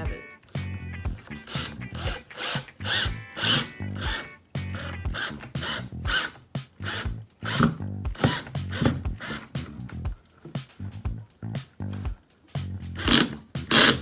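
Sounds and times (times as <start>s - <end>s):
background music: 0.0s - 14.0s
power drill driving screw: 1.5s - 4.2s, 4.8s - 9.5s, 13.0s - 14.0s.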